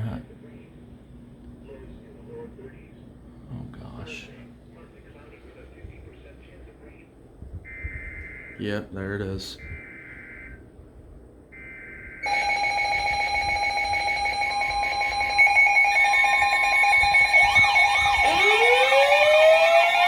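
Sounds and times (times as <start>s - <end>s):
fast warbling alarms: 7.7s - 8.6s, 9.6s - 10.7s, 11.5s - 20.0s
rising siren-like wail: 11.6s - 20.0s
buzzing data bursts: 12.2s - 19.0s
steady alert tones: 12.2s - 20.0s.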